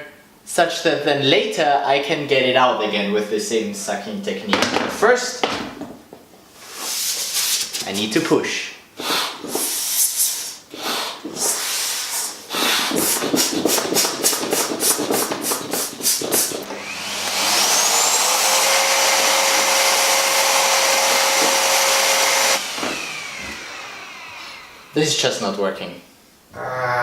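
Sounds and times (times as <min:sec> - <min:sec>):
vacuum cleaner motor: 0:12.8 - 0:24.9.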